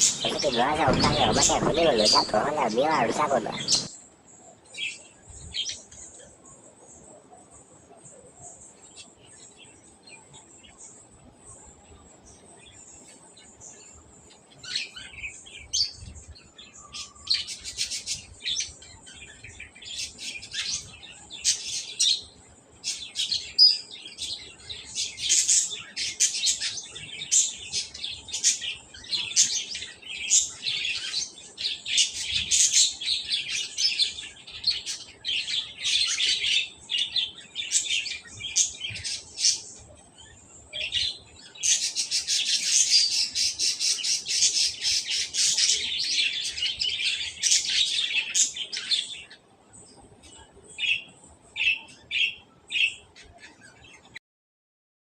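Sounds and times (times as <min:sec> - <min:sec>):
birds chirping: 0:00.0 - 0:54.2.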